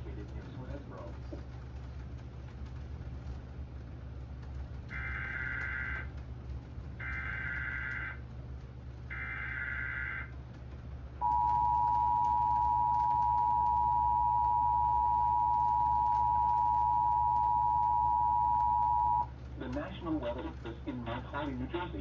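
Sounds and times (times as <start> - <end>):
two-tone alert signal: 11.2 - 19.3.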